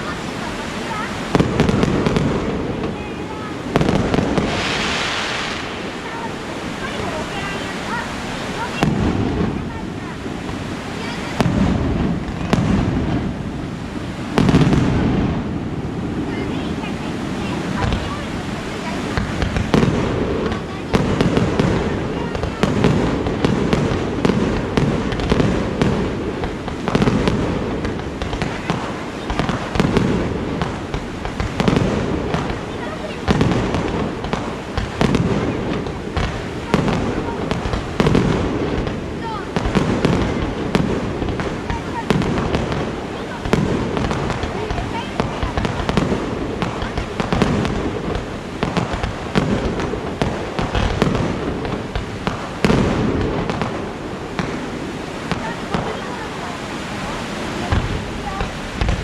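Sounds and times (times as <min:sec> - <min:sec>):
firework bangs and crackles: 0:00.0 - 0:59.0
low rumble of shells bursting: 0:01.2 - 0:07.6, 0:22.6 - 0:55.4.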